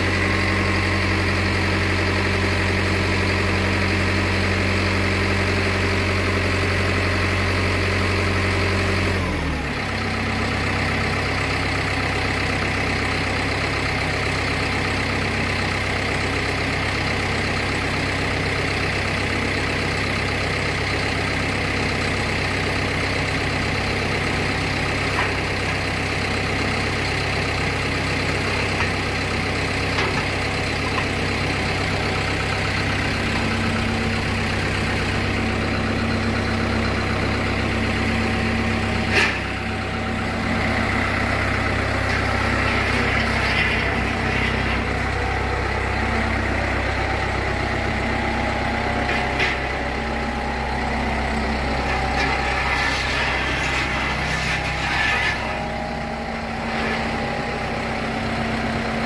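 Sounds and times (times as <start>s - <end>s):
engine running: 0.0s - 59.0s.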